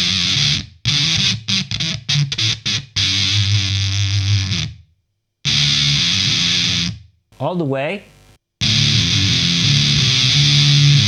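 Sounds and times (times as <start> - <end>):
distorted electric guitar: 0.0 - 4.8, 5.5 - 11.0.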